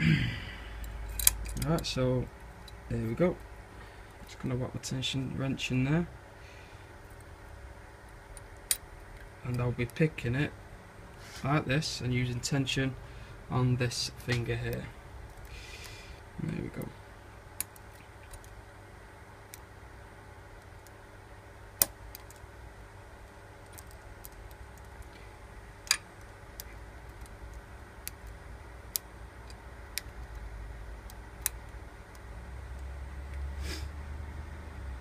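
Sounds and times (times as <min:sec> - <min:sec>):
steady low hum: 0:00.0 - 0:35.0
lock pick metallic clicks: 0:00.8 - 0:01.8.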